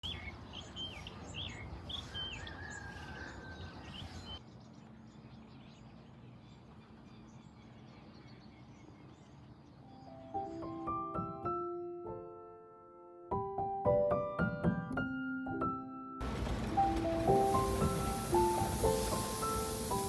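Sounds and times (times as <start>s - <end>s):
birds chirping and calling: 0.0s - 9.5s.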